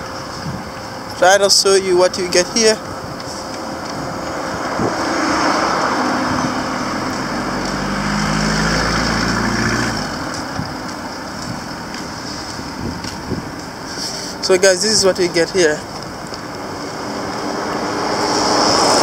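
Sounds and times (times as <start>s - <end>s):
vehicle engine passing by: 3.0s - 14.4s, 16.5s - 19.0s.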